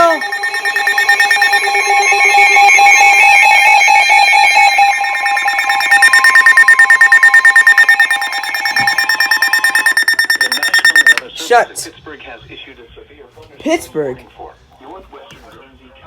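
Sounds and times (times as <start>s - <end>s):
two-tone alarm: 0.0s - 11.3s.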